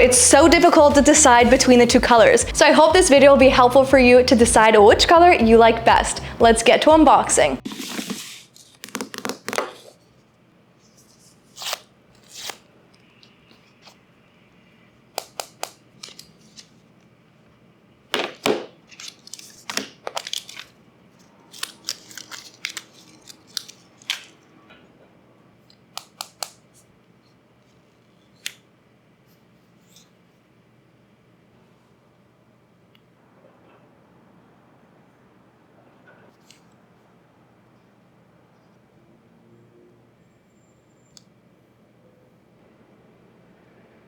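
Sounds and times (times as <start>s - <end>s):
paper packaging tearing: 7.6s - 10.0s, 11.4s - 12.7s, 18.8s - 24.4s
box clicks and taps: 8.8s - 9.8s
packaging crinkling: 18.6s - 24.4s.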